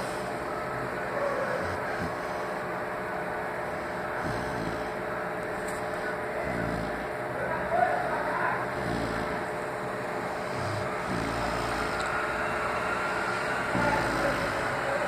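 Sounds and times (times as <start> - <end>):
dog snoring: 0.0 - 15.0.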